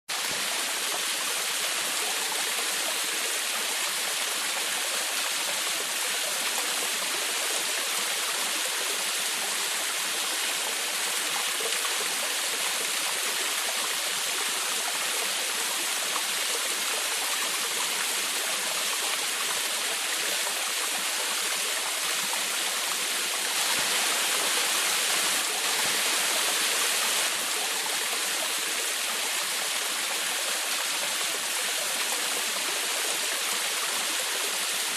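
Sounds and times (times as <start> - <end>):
small waterfall splashing: 0.1 - 34.9.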